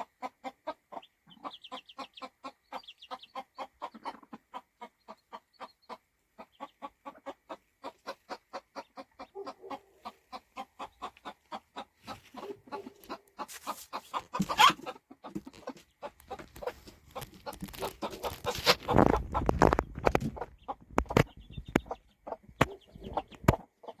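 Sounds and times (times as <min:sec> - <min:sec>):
chicks peeping: 0:00.0 - 0:24.0
hen clucking: 0:00.0 - 0:24.0
rustling and knocking: 0:13.4 - 0:23.6.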